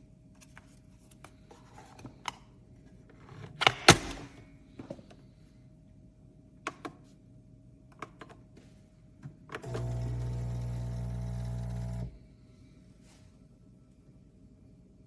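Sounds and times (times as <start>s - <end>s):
coffee maker pump buzzing: 9.6s - 12.2s.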